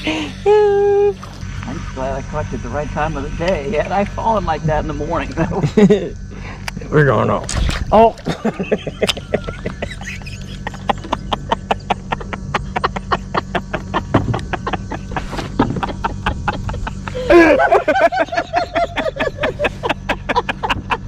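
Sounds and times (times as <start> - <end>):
low steady hum: 0.0 - 21.0
high wavering laughter: 5.4 - 6.2, 8.3 - 21.0.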